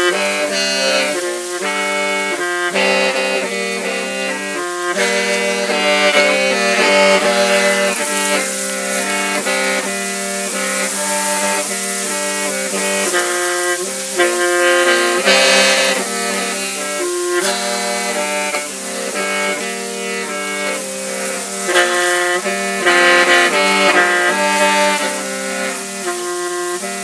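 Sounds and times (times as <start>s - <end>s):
free-reed mouth organ melody: 0.0s - 27.0s.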